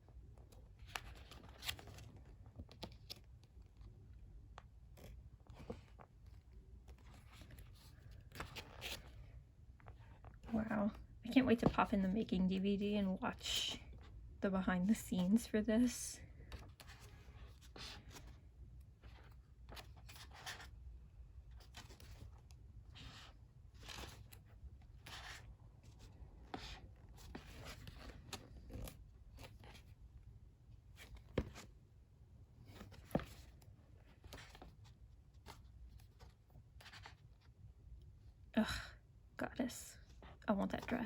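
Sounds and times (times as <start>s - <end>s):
paper pages rustling: 0.4s - 3.9s, 4.9s - 9.3s, 19.0s - 20.8s, 21.6s - 30.0s, 30.9s - 31.8s, 32.6s - 37.5s.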